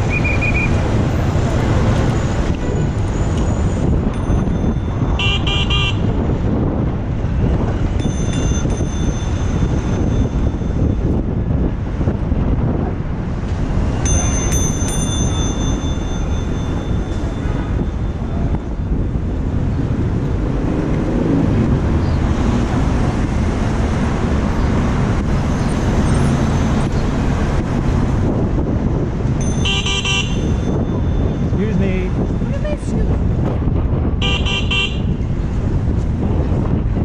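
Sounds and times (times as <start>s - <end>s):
city street traffic rumble: 0.0s - 37.0s.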